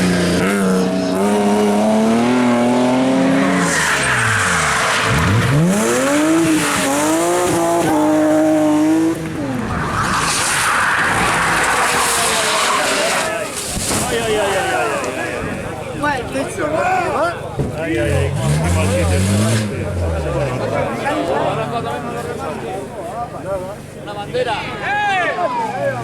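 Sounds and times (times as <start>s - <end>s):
car engine revving high: 0.0s - 10.4s, 18.0s - 20.8s.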